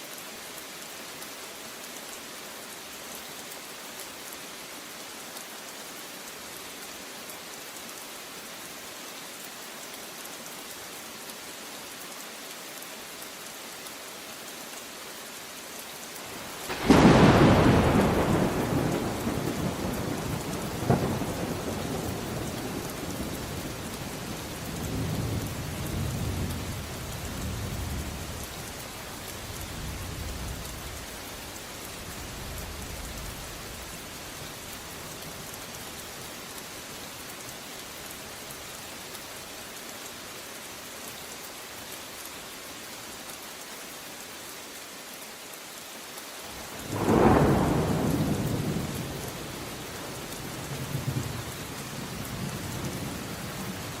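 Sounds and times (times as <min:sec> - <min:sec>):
steady rainfall: 0:00.0 - 0:54.0
loud thunderclap: 0:16.7 - 0:21.4, 0:46.9 - 0:49.0
rolling thunder rumbles: 0:16.7 - 0:28.4, 0:46.8 - 0:51.4.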